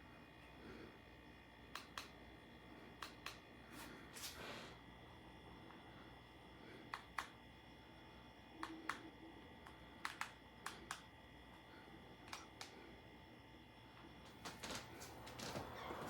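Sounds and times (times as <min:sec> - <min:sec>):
faint steady hum: 0:00.0 - 0:16.0
sharp clicks in pairs: 0:01.7 - 0:02.2, 0:10.0 - 0:11.1.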